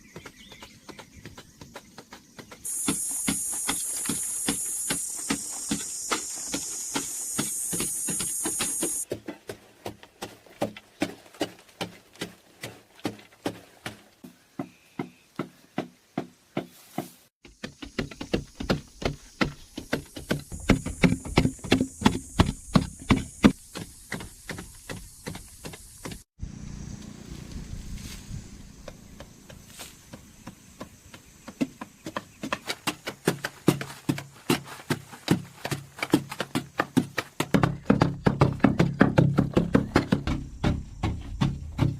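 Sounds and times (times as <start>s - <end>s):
hand tool striking: 2.7s - 9.6s
sharp knocks: 35.3s - 41.9s.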